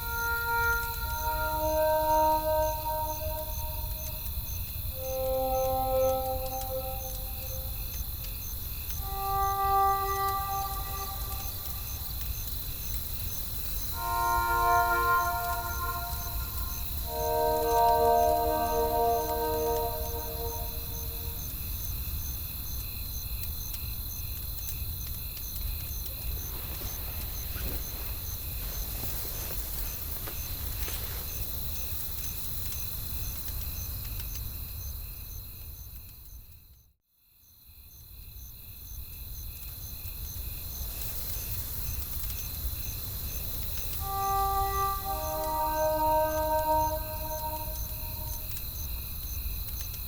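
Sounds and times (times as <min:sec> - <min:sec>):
crickets chirping: 0:00.0 - 0:21.8, 0:38.8 - 0:50.0.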